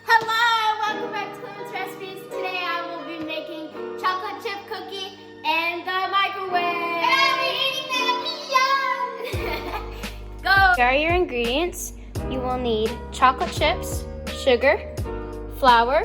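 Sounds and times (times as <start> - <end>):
child singing: 0.0 - 9.8
music: 0.0 - 16.0.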